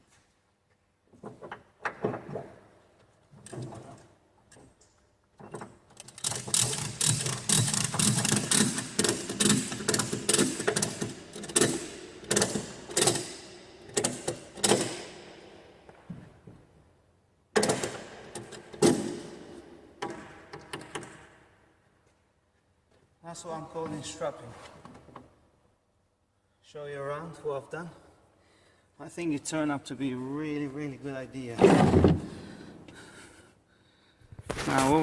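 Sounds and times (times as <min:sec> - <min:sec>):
ratchet strap clicking: 0:06.0 - 0:15.0.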